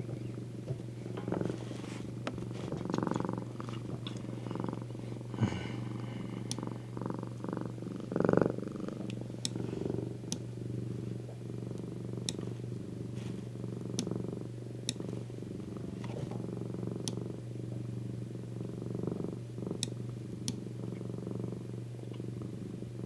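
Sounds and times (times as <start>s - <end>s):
cat purring: 0.0s - 23.0s
faint clicks: 6.3s - 7.4s, 8.0s - 10.5s.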